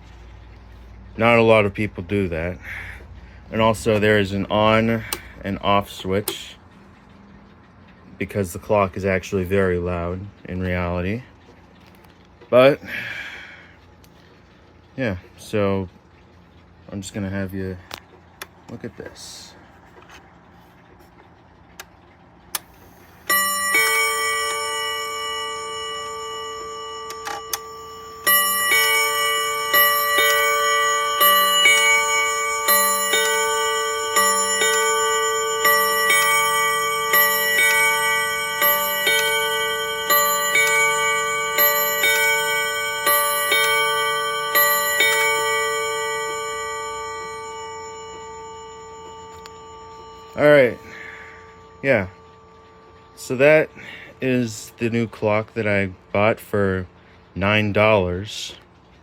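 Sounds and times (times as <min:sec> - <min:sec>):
clock chime rods ringing: 0:00.0 - 0:06.8, 0:22.6 - 0:56.8.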